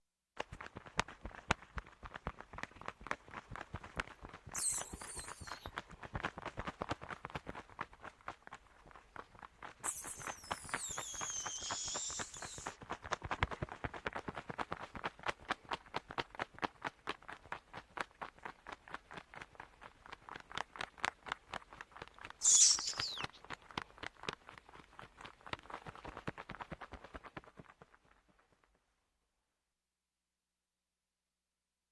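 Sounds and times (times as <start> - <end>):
bat wings flapping: 3.2 - 8.1, 9.7 - 14.0, 22.4 - 23.4
high wavering squeal: 4.6 - 5.7, 9.8 - 12.7, 22.4 - 23.3.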